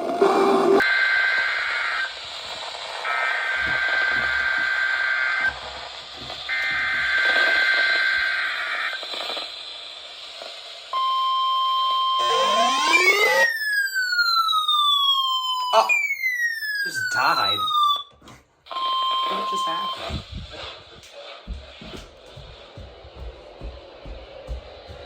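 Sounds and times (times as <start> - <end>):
steady warning alarm tone: 3.0 - 9.0, 11.0 - 18.1, 18.7 - 24.6
rasping two-tone data warble: 12.2 - 13.5
rising siren-like sweeps: 12.2 - 18.0.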